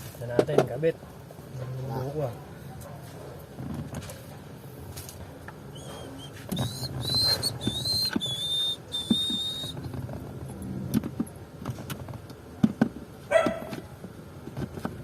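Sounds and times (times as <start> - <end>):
high whistle notes: 5.8 - 9.8.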